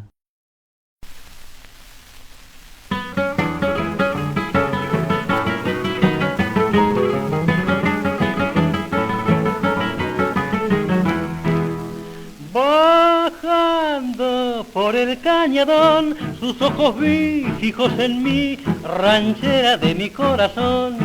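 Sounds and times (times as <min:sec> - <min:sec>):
record surface hiss: 0:01.0 - 0:21.0
plucked and strummed guitars: 0:02.9 - 0:21.0.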